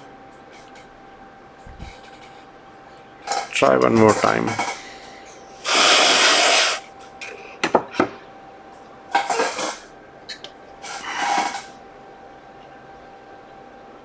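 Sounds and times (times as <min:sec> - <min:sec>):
aerosol spray hissing: 0:05.6 - 0:06.8.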